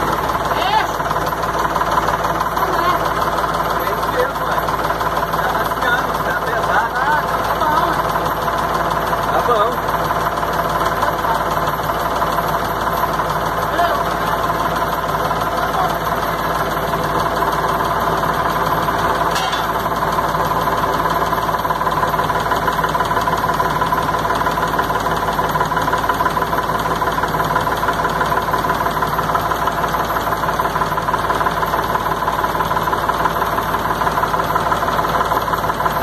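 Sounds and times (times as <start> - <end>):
truck engine running: 0.0 - 36.0
water pump high whine: 0.0 - 36.0.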